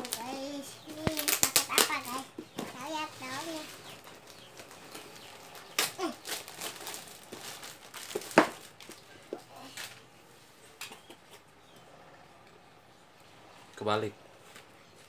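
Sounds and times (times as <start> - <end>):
packaging crinkling and crackling: 0.0 - 10.0.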